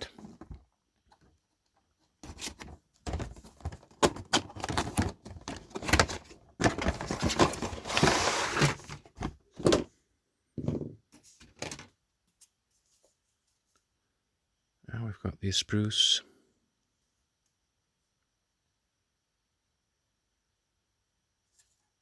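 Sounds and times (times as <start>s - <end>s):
cardboard box handled: 2.2s - 9.9s
plastic rustling scrape: 2.2s - 9.9s.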